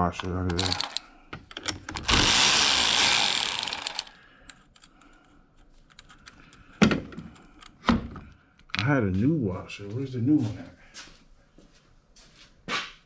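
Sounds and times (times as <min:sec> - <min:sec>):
ratchet wrench clicking: 0:00.2 - 0:04.9.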